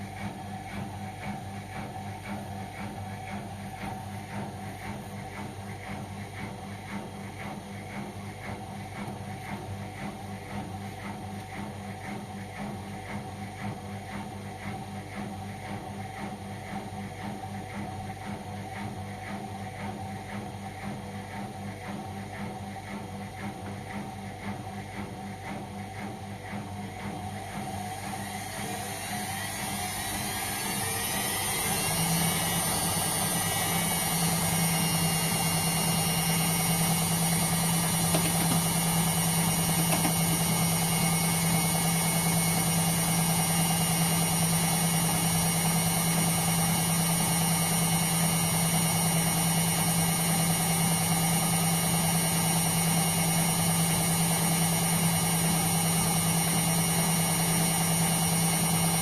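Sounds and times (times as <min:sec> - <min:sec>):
washing machine spin whine: 0:00.0 - 0:59.0.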